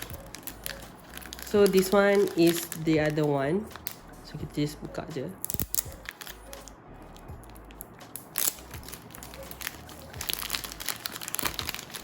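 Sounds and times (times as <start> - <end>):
packaging crinkling: 0.0 - 4.1, 5.4 - 12.0.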